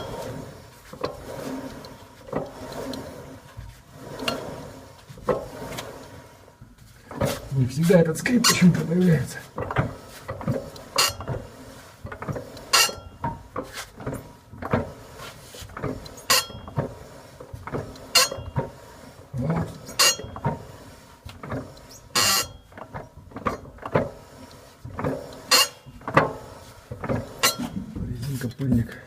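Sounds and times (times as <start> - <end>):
driveline metallic squeaks: 10.2 - 11.6, 12.7 - 13.2, 16.1 - 17.0, 18.0 - 20.9, 21.5 - 24.5, 25.2 - 26.0, 27.2 - 28.0.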